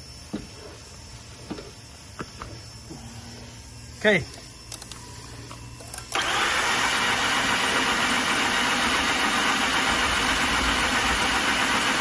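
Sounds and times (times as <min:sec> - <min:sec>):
car engine cranking: 0:05.8 - 0:12.0.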